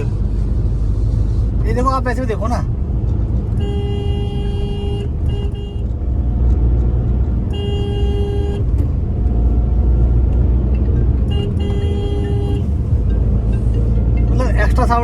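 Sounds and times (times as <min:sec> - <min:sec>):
car engine droning in cabin: 0:00.0 - 0:15.0
car horn honking: 0:03.5 - 0:05.9, 0:07.4 - 0:08.8, 0:11.2 - 0:12.9.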